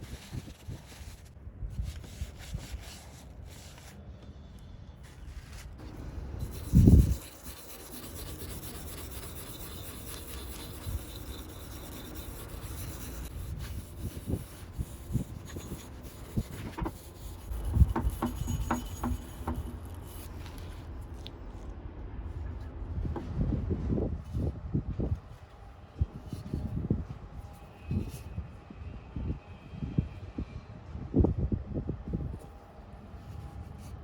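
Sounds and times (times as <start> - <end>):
hand scraping metal axe head: 5.8 - 20.8
scattered knocks: 17.6 - 19.8.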